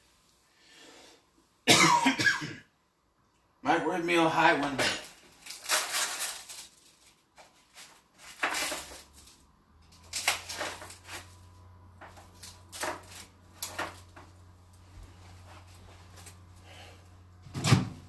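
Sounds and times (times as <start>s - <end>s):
microwave oven humming: 8.9s - 18.0s.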